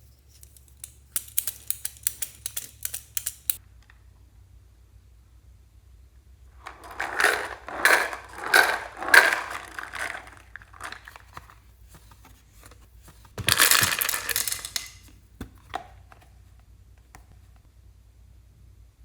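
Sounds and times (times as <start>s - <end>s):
something being crushed: 6.7s - 11.6s.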